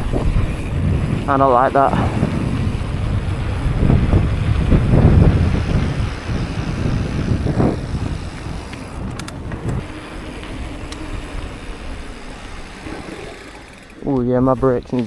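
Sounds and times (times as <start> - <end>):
bicycle rolling rumble: 0.0 - 15.0
wind buffeting microphone: 0.0 - 15.0
light clicks and rattles: 8.6 - 9.8.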